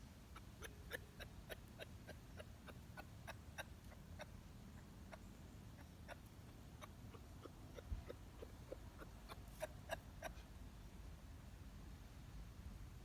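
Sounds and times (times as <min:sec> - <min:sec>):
kangaroo clucking clicks: 0:00.3 - 0:05.2, 0:05.8 - 0:10.4.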